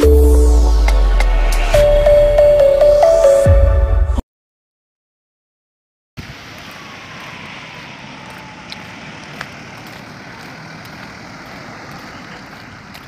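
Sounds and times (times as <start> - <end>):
rain: 6.2 - 13.0
traffic on a wet road: 6.2 - 13.0.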